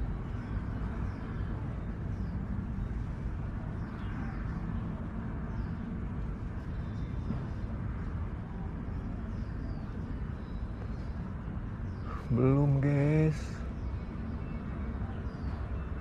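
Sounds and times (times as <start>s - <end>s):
low outdoor rumble: 0.0s - 16.0s.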